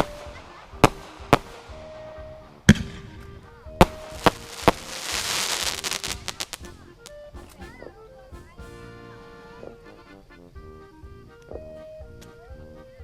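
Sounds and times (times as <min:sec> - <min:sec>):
fireworks bangs: 0:00.0 - 0:06.8
fireworks crackling pops: 0:00.0 - 0:07.9.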